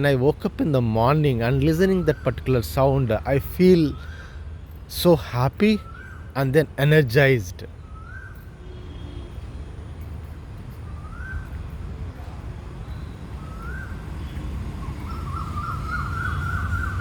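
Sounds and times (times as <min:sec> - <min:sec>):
bird whistling calls: 0:12.8 - 0:17.0.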